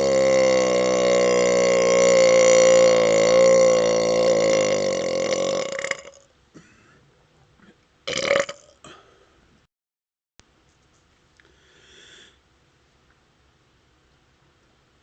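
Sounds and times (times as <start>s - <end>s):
man belching: 0.0s - 6.3s, 7.6s - 9.0s.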